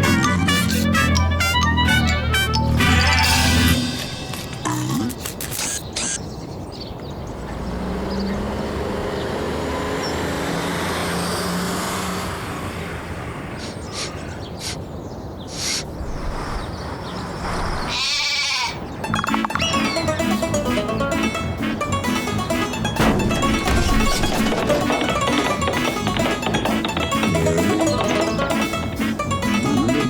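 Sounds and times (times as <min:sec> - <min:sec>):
background music: 0:00.0 - 0:05.2, 0:18.9 - 0:30.0
clicks: 0:23.0 - 0:28.5.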